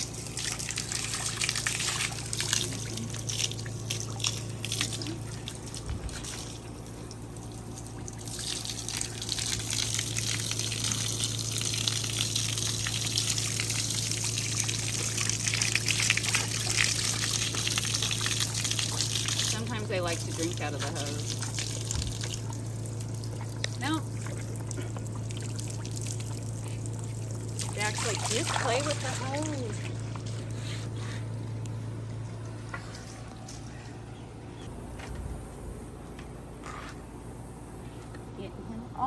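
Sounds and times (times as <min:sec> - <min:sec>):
garden hose spraying water: 0:00.0 - 0:31.2.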